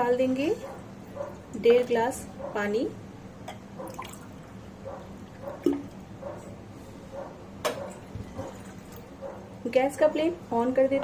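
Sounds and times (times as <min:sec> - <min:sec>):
small splashes and drips: 0:03.9 - 0:04.5.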